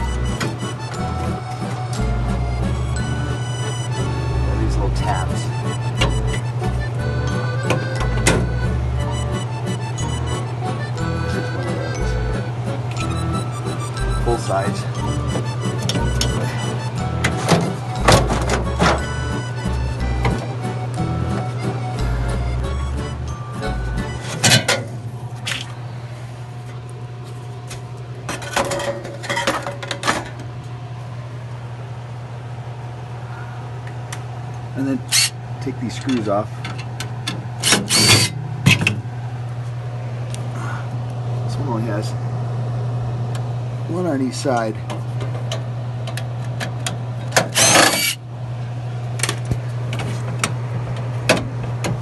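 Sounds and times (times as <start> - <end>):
steady low hum: 0.0 - 52.0
metal clanks and knocks: 17.2 - 19.2, 24.2 - 25.0, 28.3 - 30.4
power drill whirring: 37.6 - 38.3, 47.5 - 48.2.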